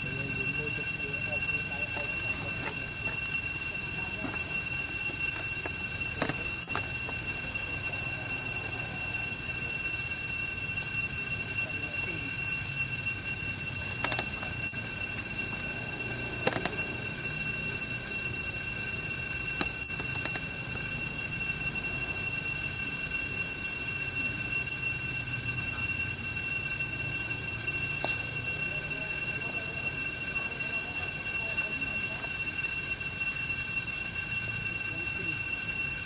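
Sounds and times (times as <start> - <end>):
high-pitched drone: 0.0 - 36.0.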